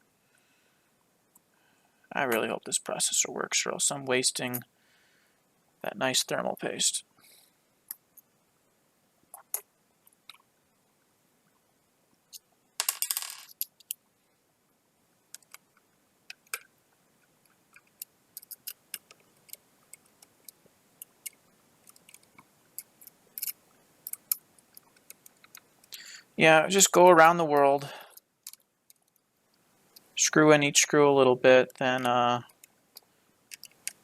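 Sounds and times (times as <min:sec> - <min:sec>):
metal parts clicking: 0:17.7 - 0:20.1, 0:21.2 - 0:25.6, 0:33.5 - 0:34.0.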